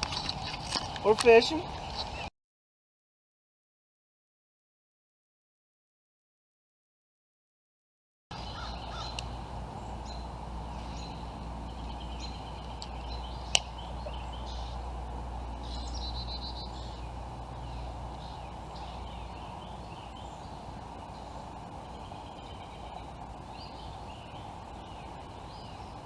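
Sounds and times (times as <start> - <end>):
birds chirping and calling: 0.0 - 2.3, 8.3 - 26.0
low hum: 8.3 - 26.0
steady background hiss: 8.3 - 26.0.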